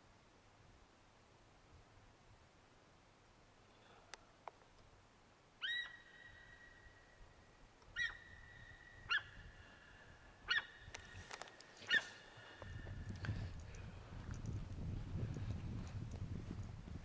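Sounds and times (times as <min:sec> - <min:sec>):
deer calling: 0:05.6 - 0:06.9, 0:07.9 - 0:11.1, 0:11.8 - 0:12.6.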